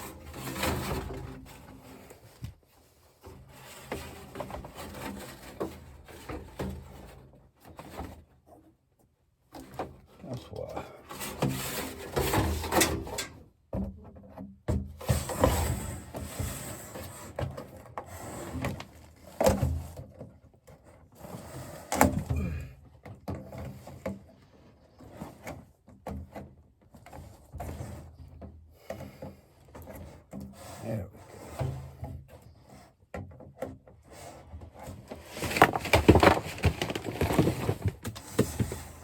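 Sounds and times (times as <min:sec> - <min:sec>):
knocks and scrapes on ductwork: 0:00.0 - 0:08.8, 0:09.5 - 0:39.0.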